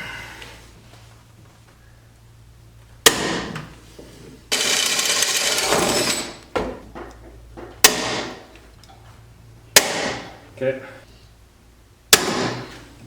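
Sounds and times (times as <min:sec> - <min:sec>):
drill whirring: 0:04.5 - 0:06.3.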